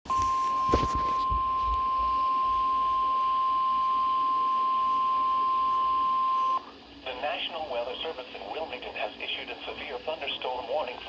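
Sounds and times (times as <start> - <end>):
static crackles: 0.1 - 3.1, 6.6 - 11.0
weather radio alarm tone: 0.1 - 7.4.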